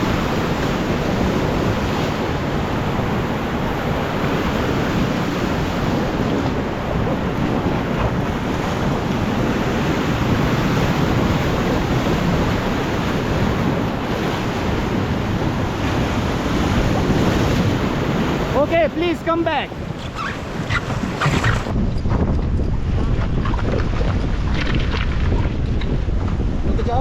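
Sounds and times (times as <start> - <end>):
wind buffeting microphone: 0.0 - 27.0
whitewater rushing: 8.4 - 21.7.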